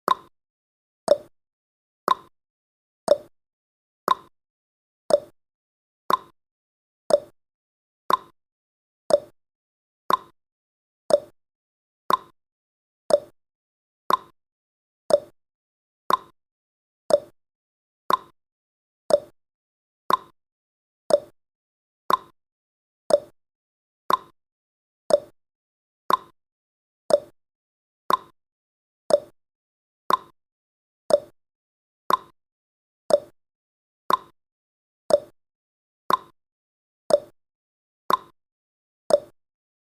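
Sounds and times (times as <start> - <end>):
clock ticking: 0.1 - 0.3, 1.1 - 1.3, 2.1 - 2.3, 3.1 - 3.3, 4.1 - 4.3, 5.1 - 5.3, 6.1 - 6.3, 7.1 - 7.3, 8.1 - 8.3, 9.1 - 9.3, 10.1 - 10.3, 11.1 - 11.3, 12.1 - 12.3, 13.1 - 13.3, 14.1 - 14.3, 15.1 - 15.3, 16.1 - 16.3, 17.1 - 17.3, 18.1 - 18.3, 19.1 - 19.3, 20.1 - 20.3, 21.1 - 21.3, 22.1 - 22.3, 23.1 - 23.3, 24.1 - 24.3, 25.1 - 25.3, 26.1 - 26.3, 27.1 - 27.3, 28.1 - 28.3, 29.1 - 29.3, 30.1 - 30.3, 31.1 - 31.4, 32.1 - 32.3, 33.1 - 33.4, 34.1 - 34.3, 35.1 - 35.4, 36.1 - 36.4, 37.1 - 37.4, 38.1 - 38.4, 39.1 - 39.4.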